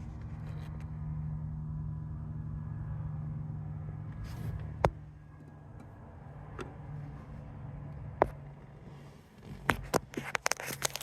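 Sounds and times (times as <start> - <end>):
steady low hum: 0.0 - 10.2
handling rustle: 8.9 - 11.0.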